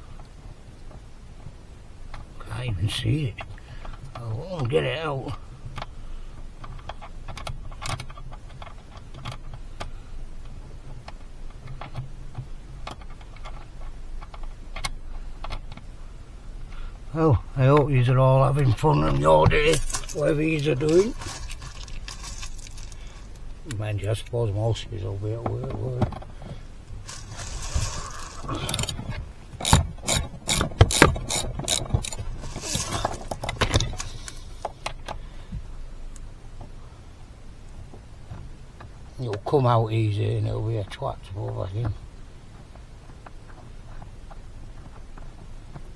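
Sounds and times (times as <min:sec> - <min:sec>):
low background hum: 0:00.0 - 0:45.9
metallic clicks of hand tools: 0:27.1 - 0:34.7.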